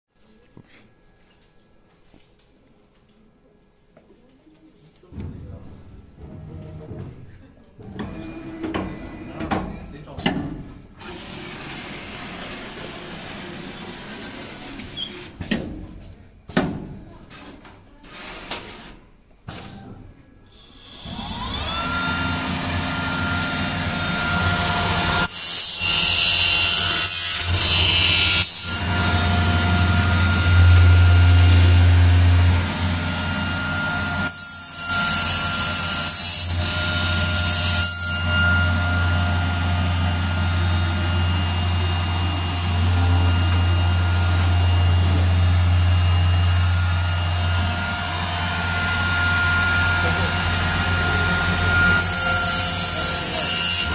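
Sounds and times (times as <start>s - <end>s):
milling machine spindle whine: 20.8s - 25.3s, 27.5s - 34.3s, 38.4s - 53.9s.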